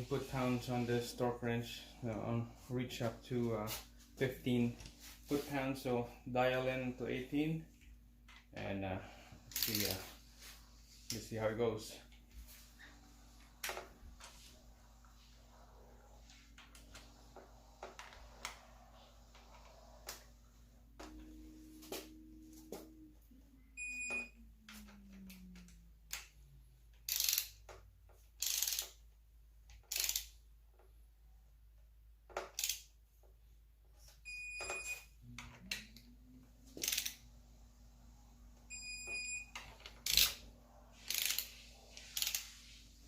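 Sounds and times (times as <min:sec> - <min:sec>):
wrench rasping bursts: 0:27.1 - 0:27.6, 0:29.9 - 0:30.3.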